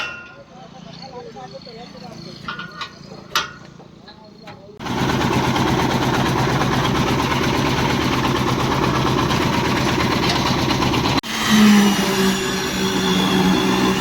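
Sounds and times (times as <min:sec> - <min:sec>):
engine running: 0:04.8 - 0:11.3, 0:12.0 - 0:14.0
higher-pitched engine hum: 0:04.8 - 0:14.0.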